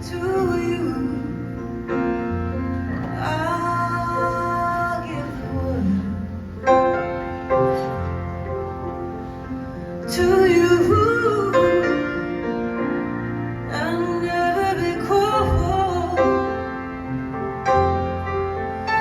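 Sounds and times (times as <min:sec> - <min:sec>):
woman singing: 0:00.0 - 0:01.8, 0:03.0 - 0:06.6, 0:10.1 - 0:12.2, 0:13.7 - 0:16.6
piano chords: 0:00.0 - 0:19.0.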